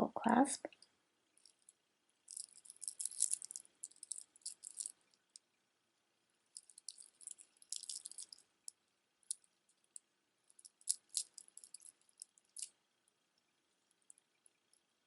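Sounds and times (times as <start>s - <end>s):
beads clicking and rattling: 1.4s - 5.4s, 6.5s - 8.5s, 9.2s - 12.8s.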